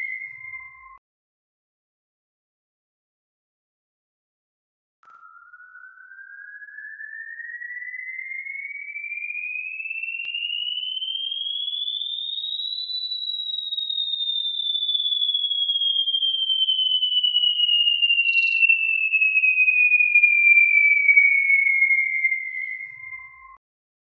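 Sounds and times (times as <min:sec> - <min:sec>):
electronic alarm tone gliding: 0:05.1 - 0:19.2.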